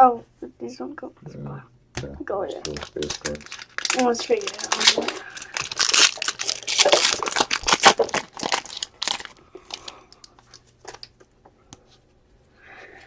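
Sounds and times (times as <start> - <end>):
cards rustling: 2.6 - 11.1
foil wrapper crinkling: 2.6 - 11.1.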